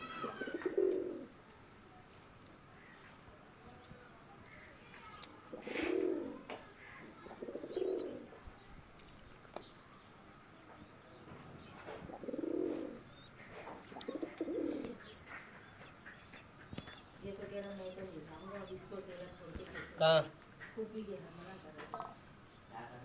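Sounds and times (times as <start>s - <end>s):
pigeons cooing: 0.2s - 1.3s, 5.5s - 8.4s, 11.8s - 16.8s.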